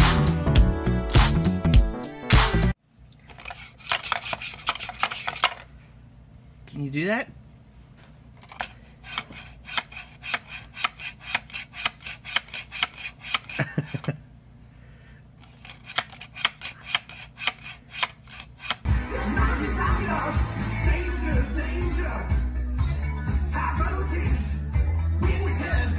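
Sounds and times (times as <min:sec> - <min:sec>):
music: 0:00.0 - 0:02.8, 0:18.9 - 0:25.9.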